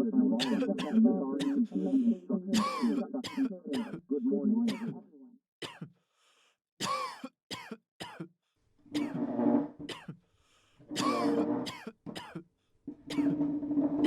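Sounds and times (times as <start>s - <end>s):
person coughing: 0.4s - 1.0s, 2.6s - 4.0s, 6.8s - 8.3s, 11.0s - 12.4s.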